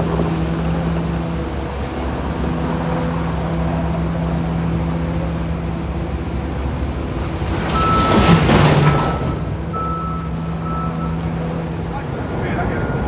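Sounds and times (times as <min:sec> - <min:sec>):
diesel truck engine running: 0:00.0 - 0:13.0
high beep: 0:09.1 - 0:12.0.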